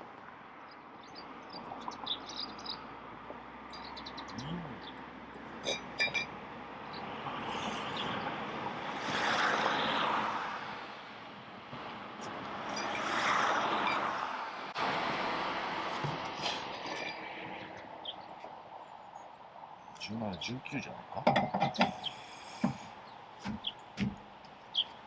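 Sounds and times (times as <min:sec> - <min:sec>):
vehicles passing: 0:00.0 - 0:25.0
light metallic clinks: 0:03.7 - 0:04.1, 0:05.6 - 0:06.4, 0:12.7 - 0:13.2, 0:13.8 - 0:14.8, 0:16.4 - 0:17.6.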